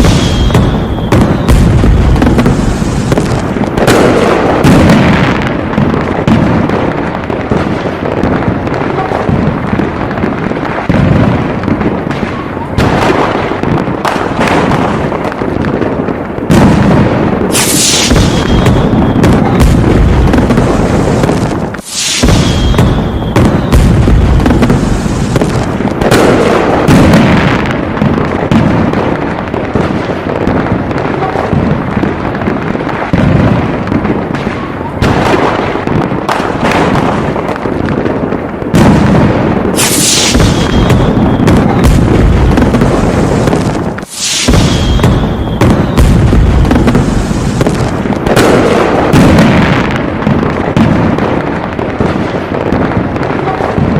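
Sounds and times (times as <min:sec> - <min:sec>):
high-pitched firework burst: 0:00.0 - 0:05.4, 0:16.9 - 0:27.6, 0:39.7 - 0:49.4
fireworks bursting and crackling: 0:00.0 - 0:53.9.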